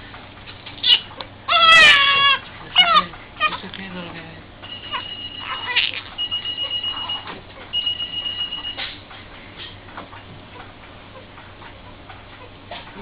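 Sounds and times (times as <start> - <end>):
electronic beeper tone: 4.6 - 8.8.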